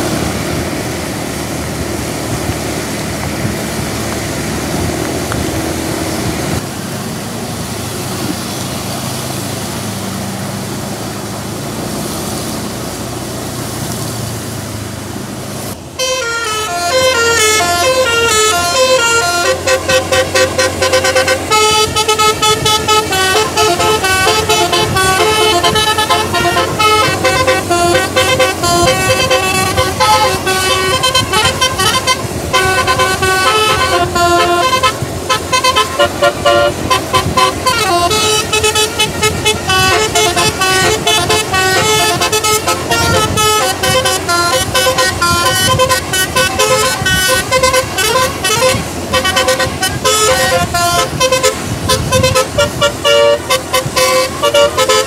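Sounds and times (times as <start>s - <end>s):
musical air horn melody: 15.8s - 55.0s.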